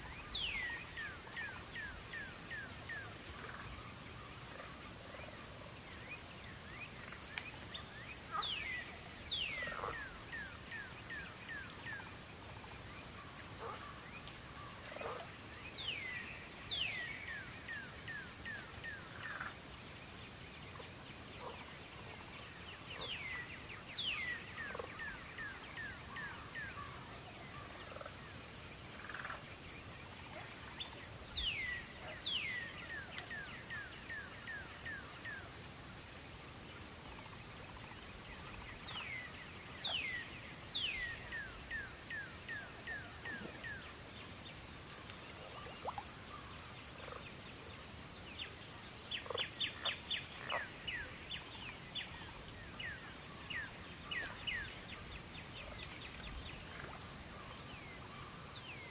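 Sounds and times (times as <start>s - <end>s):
crickets chirping: 0.0s - 58.9s.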